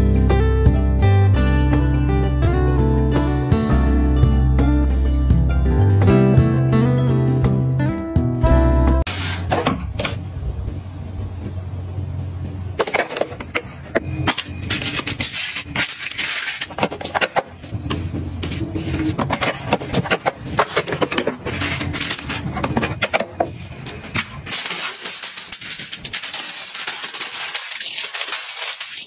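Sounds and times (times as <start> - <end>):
steady low hum: 9.4 - 26.0
household items clattering: 12.8 - 29.0.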